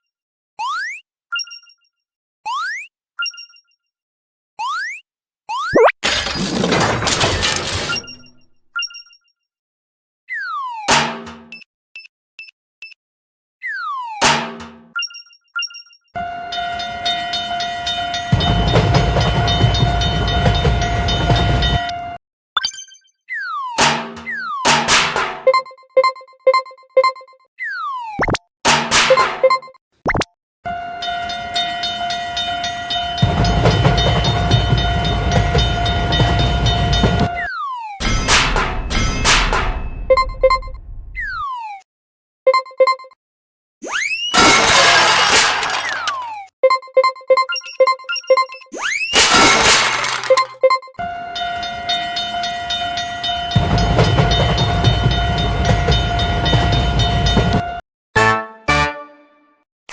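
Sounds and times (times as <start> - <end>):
crossing bell dinging: 16.5 - 22.0, 31.0 - 37.4, 51.3 - 57.8
train rumble: 16.8 - 21.9, 31.3 - 37.3, 51.6 - 57.6
train horn: 30.7 - 37.3
sharp metallic strikes: 38.0 - 40.1.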